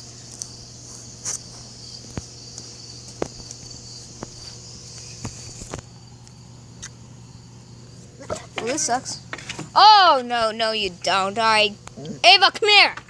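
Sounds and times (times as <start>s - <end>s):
insects chirring: 0.0s - 13.0s.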